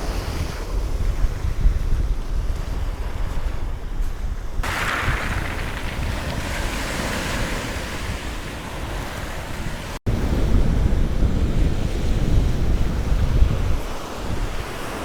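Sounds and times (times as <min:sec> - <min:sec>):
wind buffeting microphone: 0:00.0 - 0:15.0
surf washing onto beach: 0:04.6 - 0:15.0.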